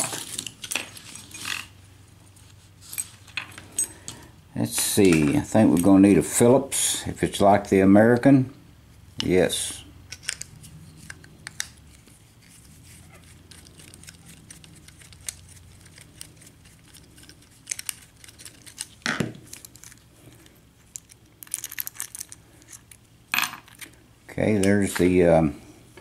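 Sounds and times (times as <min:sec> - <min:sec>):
padlock clicks and scraping: 0:13.4 - 0:23.0.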